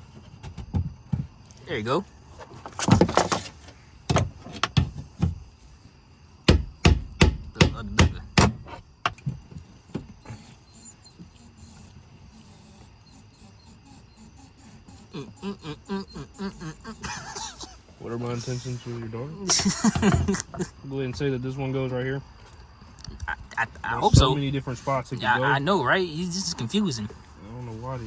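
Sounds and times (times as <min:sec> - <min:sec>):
sharp knocks on metal parts: 0:06.5 - 0:08.6.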